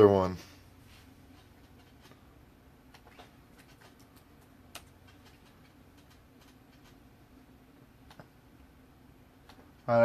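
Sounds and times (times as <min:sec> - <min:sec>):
small clicks and taps: 0:02.9 - 0:07.0, 0:08.0 - 0:08.4.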